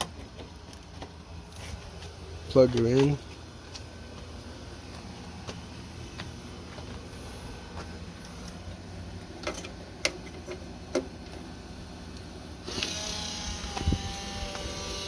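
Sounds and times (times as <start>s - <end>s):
steady hissing whir with tones: 3.2s - 15.0s.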